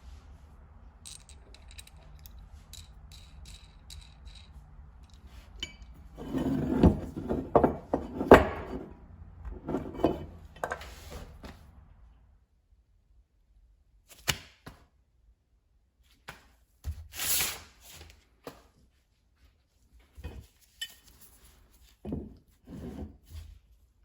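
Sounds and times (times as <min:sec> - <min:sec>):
knocks rubbing and scraping: 0:01.1 - 0:11.4.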